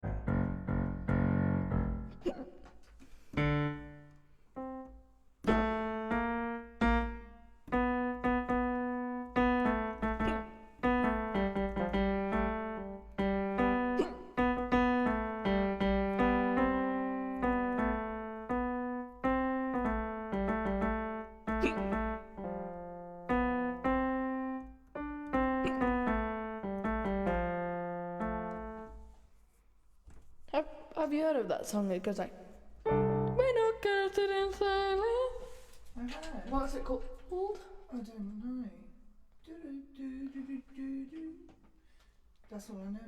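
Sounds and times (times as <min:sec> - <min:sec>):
piano-style keyboard playing: 0:00.0 - 0:02.2, 0:03.4 - 0:29.1, 0:32.9 - 0:33.8.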